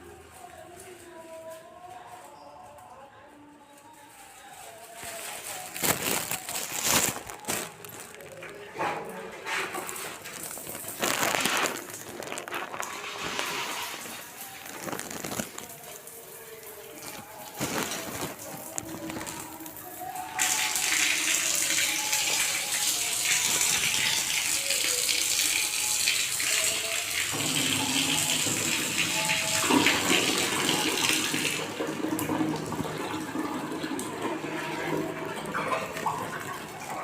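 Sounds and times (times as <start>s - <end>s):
water rushing from a fitting: 9.4s - 37.0s.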